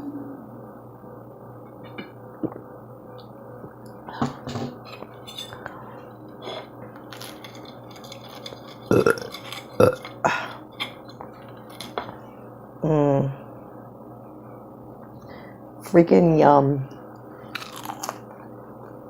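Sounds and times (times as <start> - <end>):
person chewing: 6.4 - 12.0, 17.6 - 18.5
loud mouth sounds: 8.9 - 10.0
person burping: 8.9 - 10.4.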